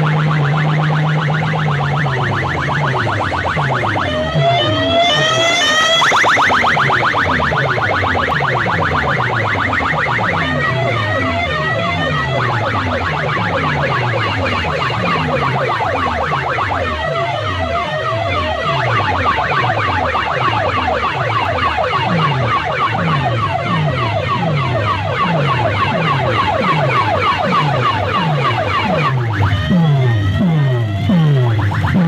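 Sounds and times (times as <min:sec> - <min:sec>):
siren-like falling wail: 0:00.0 - 0:32.0
fast high warbling chirps: 0:18.4 - 0:32.0.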